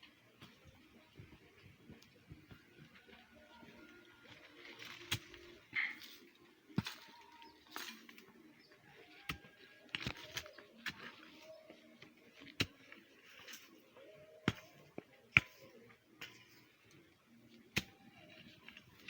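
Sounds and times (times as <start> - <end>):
hoe striking soil: 4.8 - 6.2, 6.8 - 8.3, 9.1 - 11.7, 12.4 - 16.7, 17.7 - 19.0.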